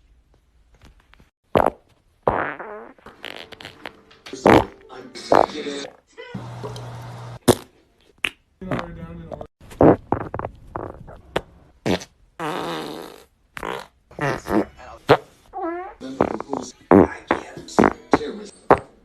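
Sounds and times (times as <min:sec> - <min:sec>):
short buzzy farts: 0:01.5 - 0:05.5, 0:09.7 - 0:17.1.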